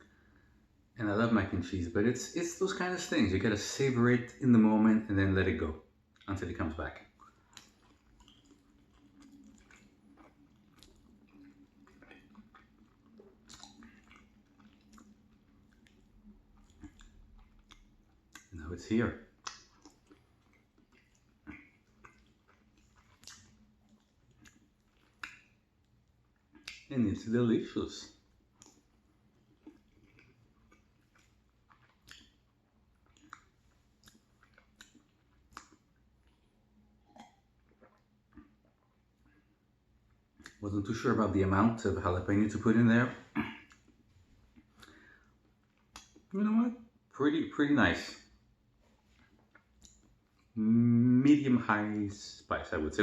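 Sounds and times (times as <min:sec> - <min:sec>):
faint chewing: 0:06.1 - 0:40.6, 0:43.0 - 0:46.4, 0:48.1 - 0:50.6
wet mouth clicks and smacks: 0:07.1 - 0:18.6, 0:19.3 - 0:27.0, 0:28.5 - 0:39.4, 0:40.4 - 0:40.6, 0:43.4 - 0:46.3, 0:48.8 - 0:50.6.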